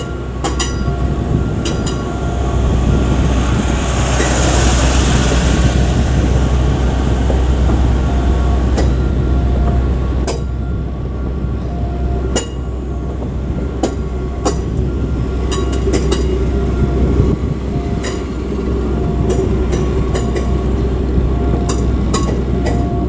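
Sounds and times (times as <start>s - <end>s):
ringing metallic clanks: 0.0s - 2.4s, 8.7s - 10.8s, 11.6s - 23.0s
heavy machinery humming: 0.0s - 23.0s
short beeps: 8.1s - 18.3s.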